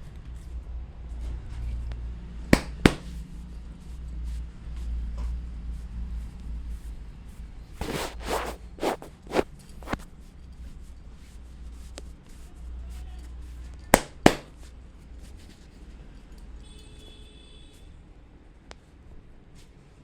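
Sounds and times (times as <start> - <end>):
hand slaps and taps: 2.6 - 3.1, 7.8 - 10.0, 14.0 - 14.5.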